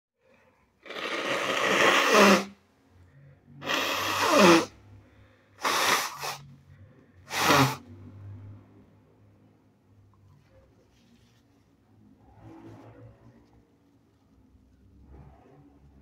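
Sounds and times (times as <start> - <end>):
person blowing nose: 0.8 - 2.6, 3.6 - 4.8, 5.6 - 6.5, 7.3 - 8.0.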